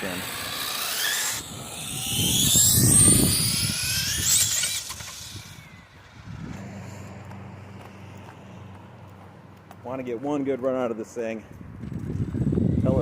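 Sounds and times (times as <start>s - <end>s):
electric motor whining: 0.0s - 9.2s
low rush: 0.0s - 10.2s.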